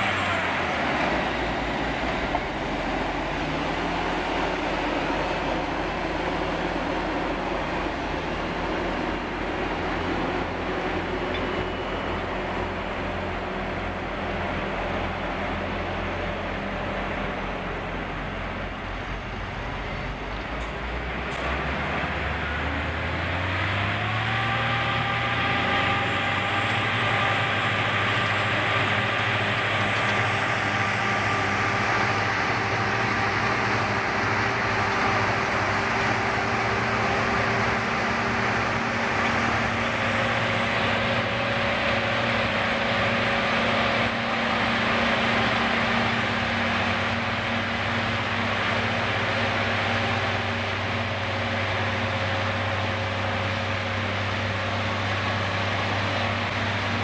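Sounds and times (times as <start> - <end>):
heavy machinery engine running: 0.0 - 57.0
steady whine: 22.4 - 57.0.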